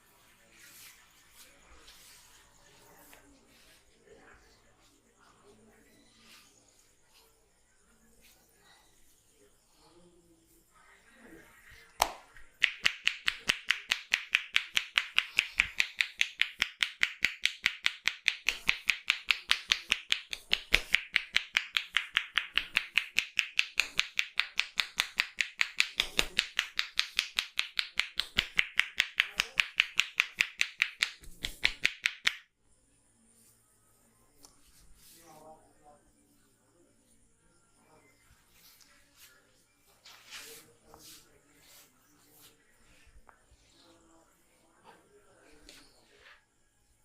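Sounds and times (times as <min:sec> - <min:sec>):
hands clapping on head: 0:11.8 - 0:32.5.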